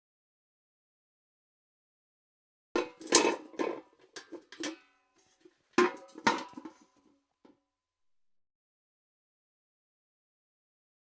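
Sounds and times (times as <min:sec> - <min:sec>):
steel bucket clanking: 0:02.8 - 0:06.9.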